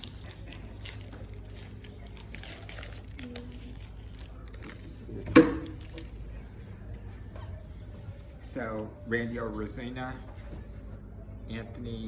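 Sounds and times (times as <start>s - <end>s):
cards and wrappers rustling: 0.0s - 6.2s.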